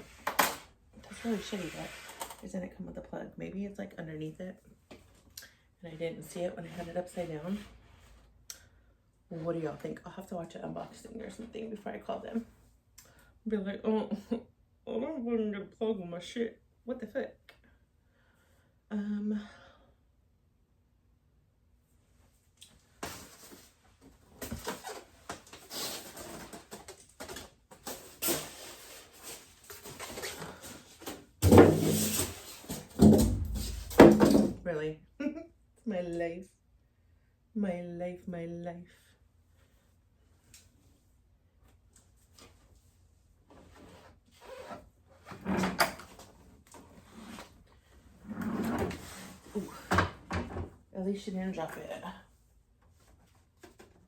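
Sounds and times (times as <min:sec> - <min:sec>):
objects knocking and scraping: 0:26.0 - 0:34.6.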